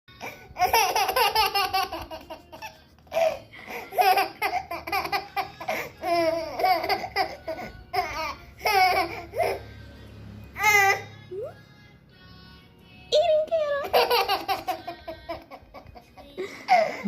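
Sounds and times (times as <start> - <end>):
baby laughing: 0.2 - 9.7, 13.8 - 17.0.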